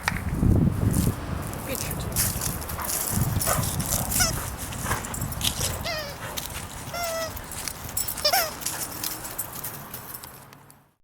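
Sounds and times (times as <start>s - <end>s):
dog whining: 4.1s - 4.5s, 5.6s - 8.9s.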